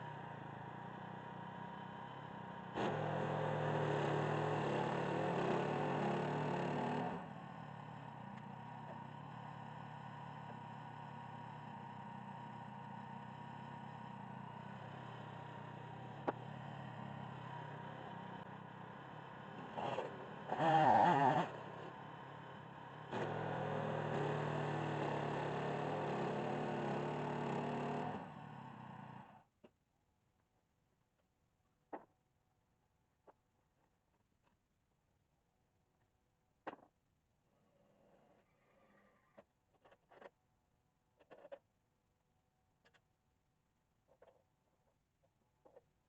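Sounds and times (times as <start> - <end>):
sawmill engine running: 0.0 - 29.4.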